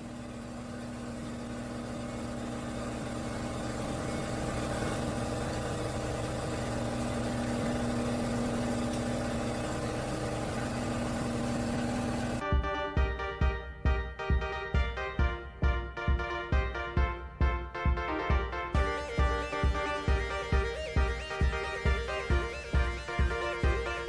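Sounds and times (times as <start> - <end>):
motor humming: 0.0 - 12.4, 18.8 - 24.0
music: 12.4 - 24.0.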